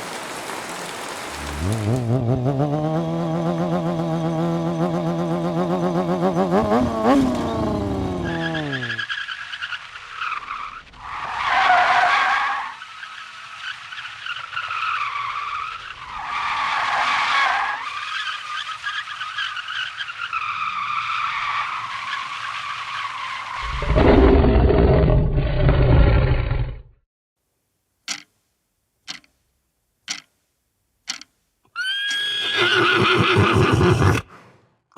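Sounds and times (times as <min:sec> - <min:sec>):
car engine: 0:01.3 - 0:09.2
wavering tyre squeal: 0:03.4 - 0:23.7, 0:31.8 - 0:34.2
deep rumble: 0:23.6 - 0:26.9.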